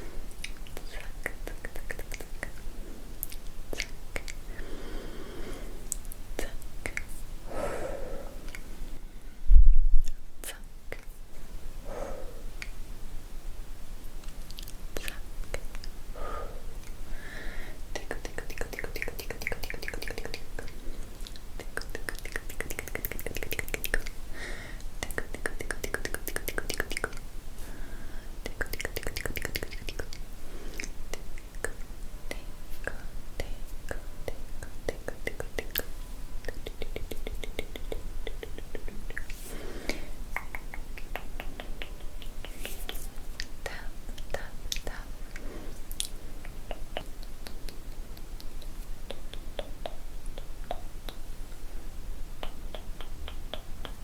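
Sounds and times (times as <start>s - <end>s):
soft breathy whisper-like sounds: 0.0s - 12.8s, 14.4s - 54.0s
wet tongue and lip clicks: 0.3s - 4.4s, 5.9s - 7.2s, 14.2s - 16.0s, 17.9s - 24.2s, 24.9s - 27.2s, 28.4s - 51.6s, 52.4s - 54.0s.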